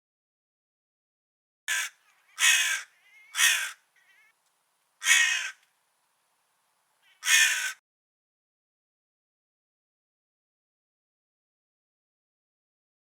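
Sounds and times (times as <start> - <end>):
crow cawing: 1.7 - 4.4, 5.0 - 5.7, 7.0 - 7.8.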